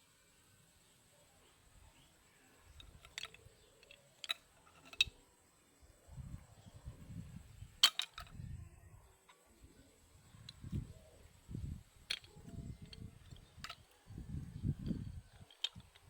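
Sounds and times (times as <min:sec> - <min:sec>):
shell cracking clicks: 0:02.8 - 0:05.1, 0:07.8 - 0:08.4, 0:12.1 - 0:14.0, 0:14.8 - 0:16.0.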